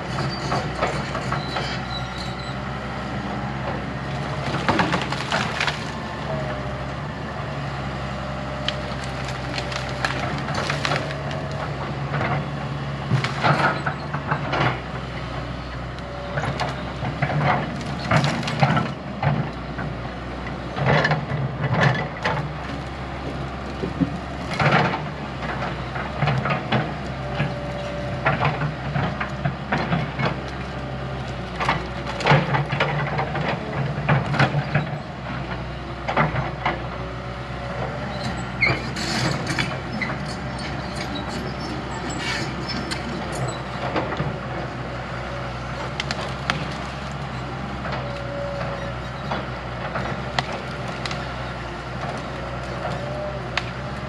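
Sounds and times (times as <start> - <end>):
diesel engine running: 0.0 - 54.0.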